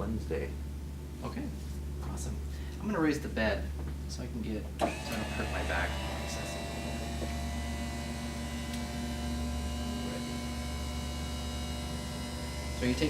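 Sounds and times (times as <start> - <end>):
bed lift motor humming: 4.8 - 13.0.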